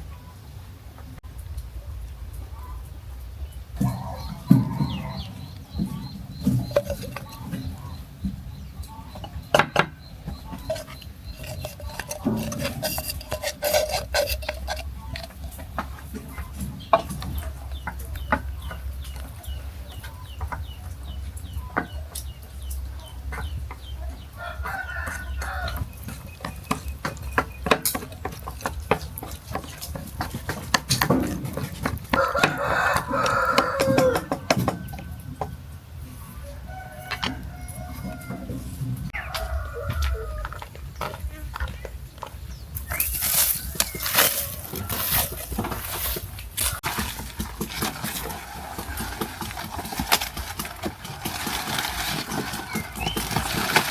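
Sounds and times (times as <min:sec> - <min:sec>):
chickens clucking: 0:01.0 - 0:53.9
rooster crowing: 0:24.4 - 0:25.8, 0:32.1 - 0:35.3, 0:36.4 - 0:38.6, 0:39.2 - 0:40.7
sharp clicks and knocks: 0:25.7 - 0:35.6.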